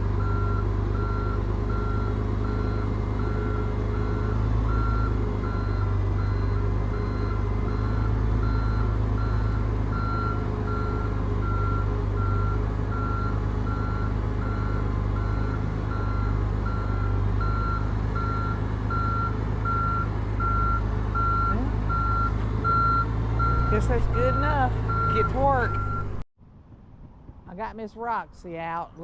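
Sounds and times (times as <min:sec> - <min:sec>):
engine rumbling: 0:00.0 - 0:29.0
reversing alarm beeping: 0:00.2 - 0:26.2.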